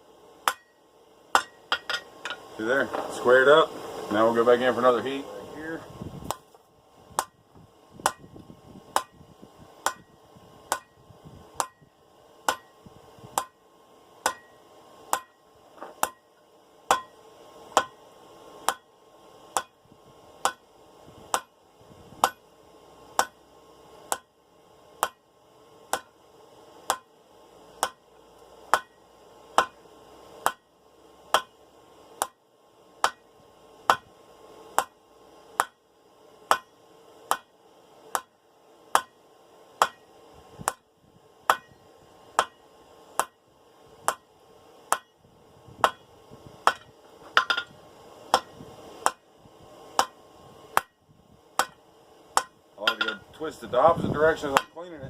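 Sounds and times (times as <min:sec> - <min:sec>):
hammer striking steel on anvil: 0:00.4 - 0:03.2, 0:08.0 - 0:08.2, 0:09.0 - 0:09.2, 0:09.8 - 0:10.1, 0:10.7 - 0:11.0, 0:11.6 - 0:11.8, 0:12.5 - 0:12.8, 0:13.4 - 0:13.6, 0:14.2 - 0:16.3, 0:16.9 - 0:18.0, 0:18.6 - 0:18.9, 0:19.5 - 0:19.8, 0:20.4 - 0:20.7, 0:21.3 - 0:21.5, 0:22.2 - 0:22.4, 0:23.2 - 0:23.4, 0:24.1 - 0:24.3, 0:25.0 - 0:25.2, 0:25.9 - 0:26.2, 0:26.9 - 0:27.1, 0:27.8 - 0:28.0, 0:28.7 - 0:29.8, 0:30.4 - 0:30.7, 0:31.3 - 0:31.6, 0:32.2 - 0:32.4, 0:33.0 - 0:33.3, 0:33.9 - 0:34.1, 0:34.8 - 0:35.0, 0:35.6 - 0:35.8, 0:36.5 - 0:37.5, 0:38.1 - 0:38.3, 0:38.9 - 0:39.2, 0:39.8 - 0:40.9, 0:41.5 - 0:41.8, 0:42.4 - 0:42.6, 0:43.2 - 0:43.4, 0:44.1 - 0:44.3, 0:44.9 - 0:45.2, 0:45.8 - 0:47.7, 0:48.3 - 0:49.2, 0:50.0 - 0:50.2, 0:50.8 - 0:51.0, 0:51.6 - 0:51.8, 0:52.4 - 0:53.3, 0:54.4 - 0:54.8.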